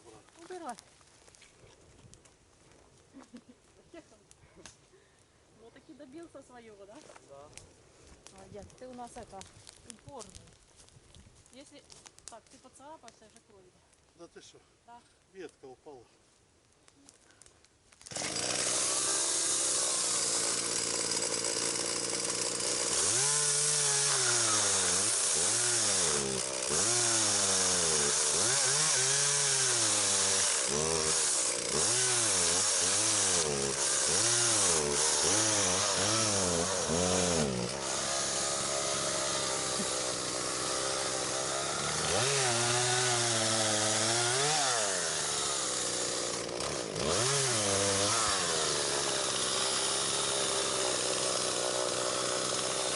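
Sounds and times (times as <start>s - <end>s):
chainsaw cutting branches: 18.0s - 52.9s.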